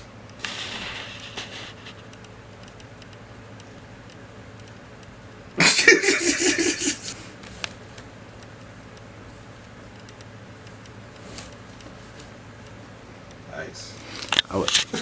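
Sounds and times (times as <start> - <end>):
low steady hum: 0.0 - 15.0
person laughing: 5.6 - 7.2.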